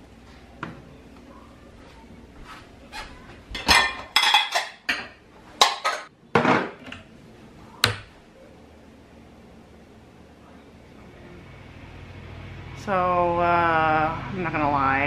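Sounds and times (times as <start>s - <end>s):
dishes and cutlery clinking: 3.0s - 6.8s.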